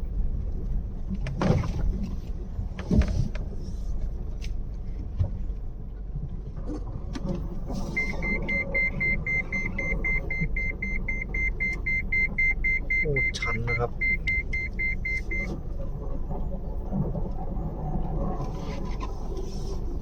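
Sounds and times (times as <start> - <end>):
car engine rumble: 0.0 - 20.0
rapid electronic warning beeps: 7.9 - 15.5.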